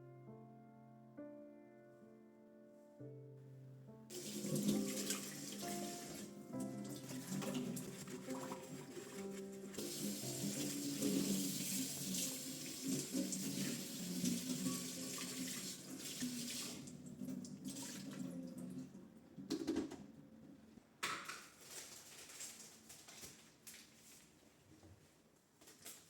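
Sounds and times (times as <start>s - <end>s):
tap water running into sink: 4.1s - 18.9s.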